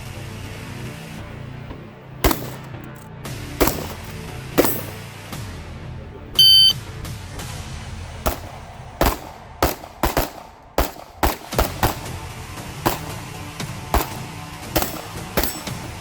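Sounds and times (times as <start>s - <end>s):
gunshots: 2.2s - 2.9s, 3.6s - 5.0s, 8.3s - 12.2s, 12.8s - 13.3s, 13.9s - 16.0s
shot timer start beep: 6.4s - 6.8s.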